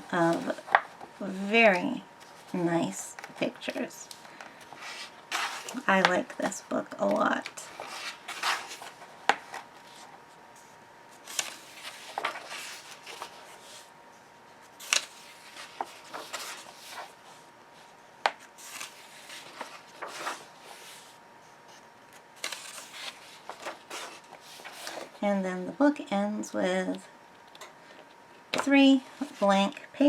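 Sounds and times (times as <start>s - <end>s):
book pages turning: 3.2s - 13.9s, 14.7s - 17.4s, 18.3s - 25.2s.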